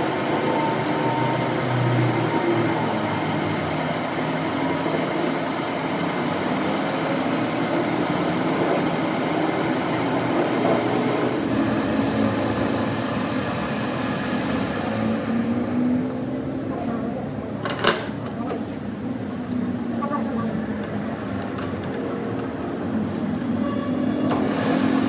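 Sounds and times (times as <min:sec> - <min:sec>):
metal lathe running: 0:00.0 - 0:15.6, 0:24.2 - 0:25.0.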